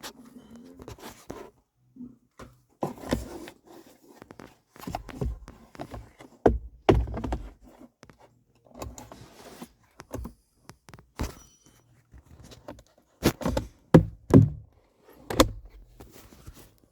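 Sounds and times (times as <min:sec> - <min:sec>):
hollow knocks of plastic parts: 0:04.2 - 0:08.2, 0:13.2 - 0:16.0.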